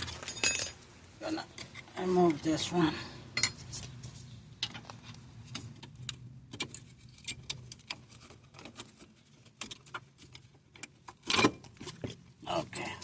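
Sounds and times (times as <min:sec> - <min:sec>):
hand tools clinking on metal: 0:00.0 - 0:00.8.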